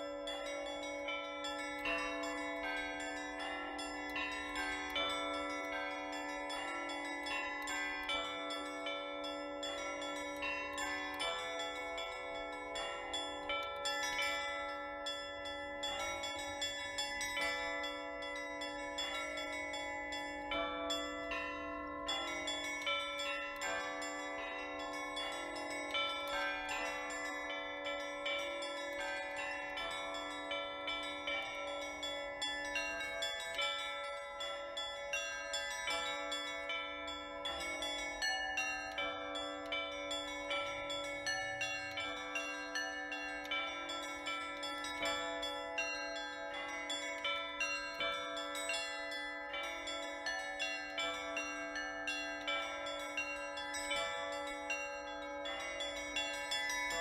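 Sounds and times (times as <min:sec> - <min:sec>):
small church bells striking: 0:00.0 - 0:57.0.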